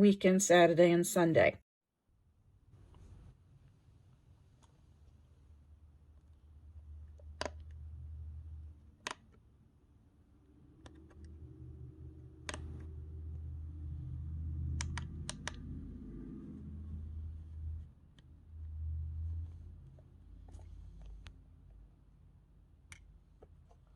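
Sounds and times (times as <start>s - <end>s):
sharp plastic clicks: 9.0s - 9.4s.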